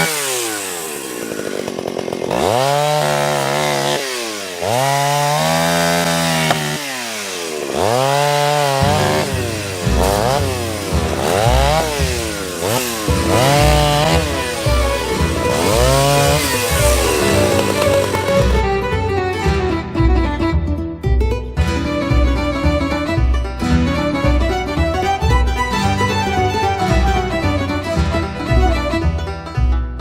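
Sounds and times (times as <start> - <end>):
chainsaw revving: 0.0 - 19.1.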